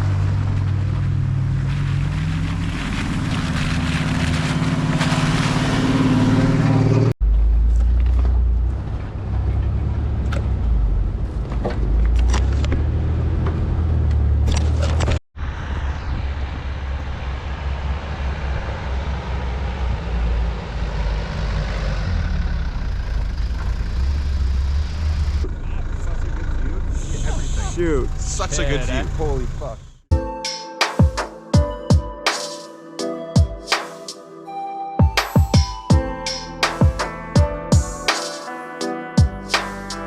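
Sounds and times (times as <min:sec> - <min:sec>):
vehicle engine running: 0:16.2 - 0:30.1.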